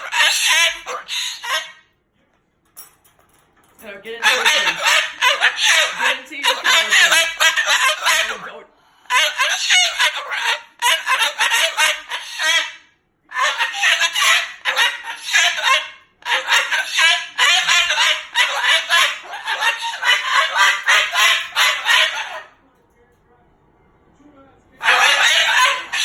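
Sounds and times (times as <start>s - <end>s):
cockatoo harsh calls: 0.0s - 1.9s, 4.1s - 22.6s, 24.8s - 26.0s.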